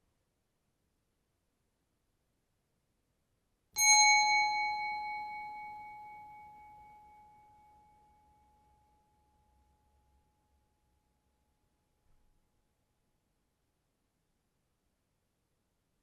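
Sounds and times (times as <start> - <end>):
bell ringing: 3.8 - 6.5.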